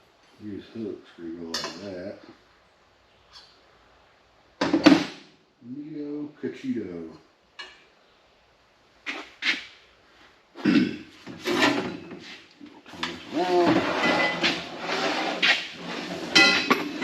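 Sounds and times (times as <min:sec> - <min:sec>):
metal knocks and clanks: 0:16.2 - 0:17.0.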